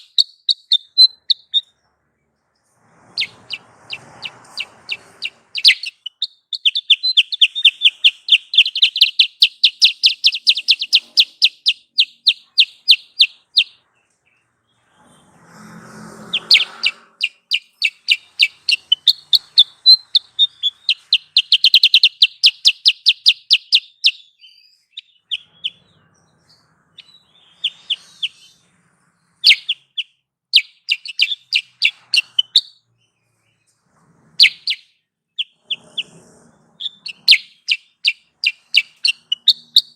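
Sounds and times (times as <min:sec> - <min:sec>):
rapid high bird chirps: 0:00.0 - 0:39.9
rustling noise: 0:02.6 - 0:05.9.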